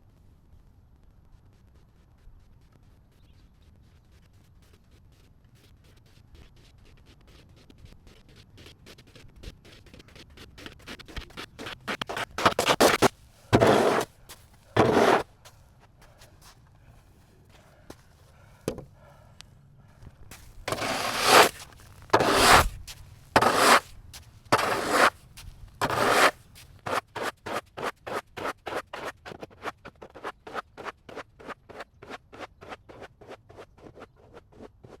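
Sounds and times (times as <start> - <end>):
shovel scraping snow: 11.2 - 15.3, 20.3 - 23.9, 24.5 - 25.2, 25.8 - 35.0.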